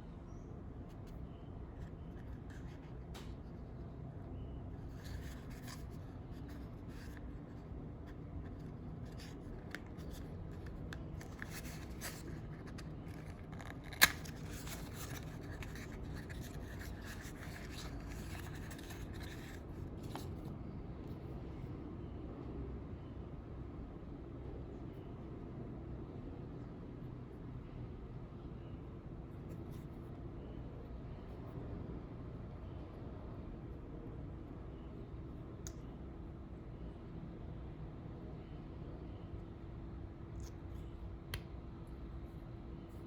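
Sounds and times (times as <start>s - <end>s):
low background hum: 0.0s - 43.0s
packaging rustling and scraping: 9.0s - 20.4s.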